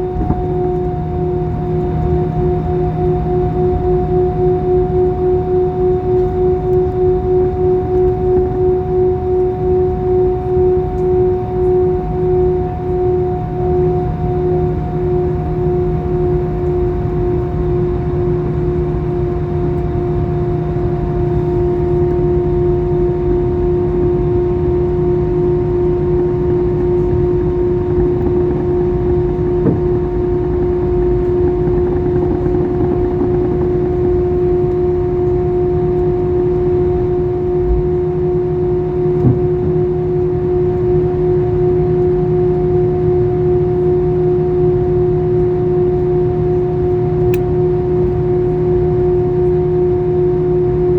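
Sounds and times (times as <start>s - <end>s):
jet engines rumbling with whine: 0.0s - 50.9s.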